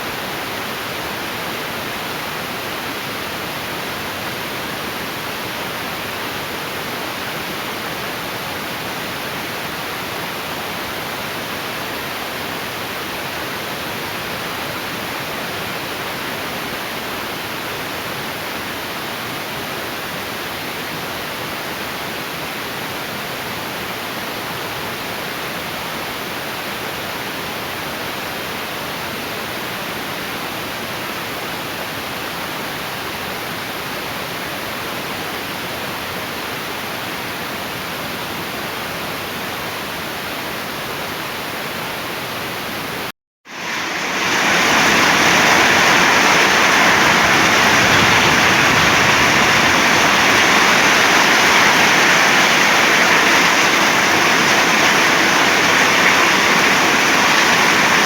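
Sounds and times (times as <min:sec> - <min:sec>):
heavy rain pouring: 0:43.5 - 0:58.0.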